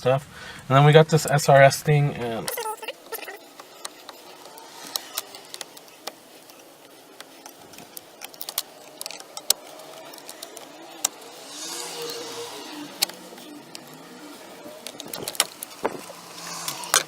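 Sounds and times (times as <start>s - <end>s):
rushing noise: 1.8s - 17.0s
hands clicking plastic parts: 14.8s - 17.0s.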